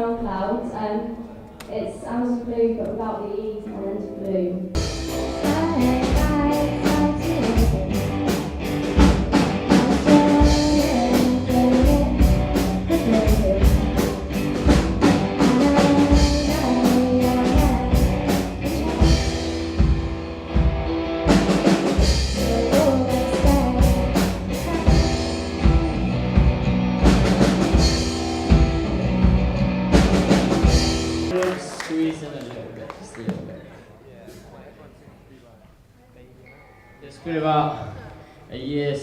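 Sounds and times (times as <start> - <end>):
guitar: 3.6 - 31.4
bass guitar: 4.8 - 31.4
drum kit beat: 4.8 - 31.4.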